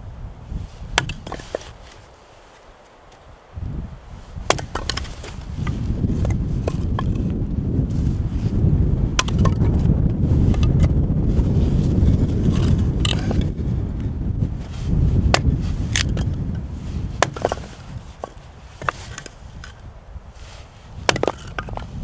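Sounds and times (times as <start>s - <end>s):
wind buffeting microphone: 0.0s - 2.2s, 3.0s - 22.0s
knocks and scrapes: 0.5s - 3.3s, 4.1s - 22.0s.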